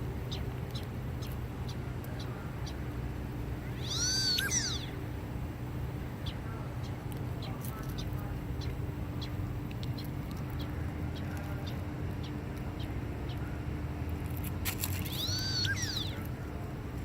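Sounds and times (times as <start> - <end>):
steady low hum: 0.0 - 17.0
duck whistled call: 3.8 - 4.9.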